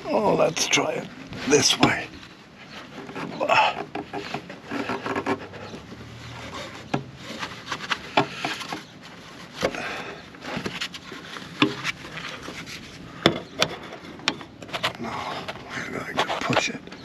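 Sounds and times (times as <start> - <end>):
knocks and clicks with rubbing: 2.7 - 8.9, 10.5 - 12.6, 13.2 - 15.6.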